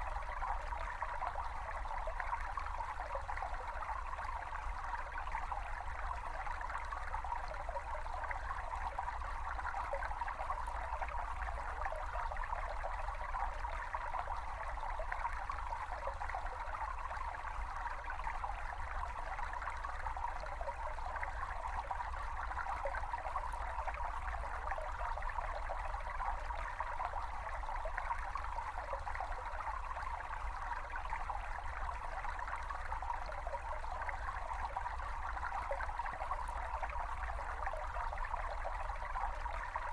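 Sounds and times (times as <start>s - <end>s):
brook babbling over stones: 0.0s - 39.9s.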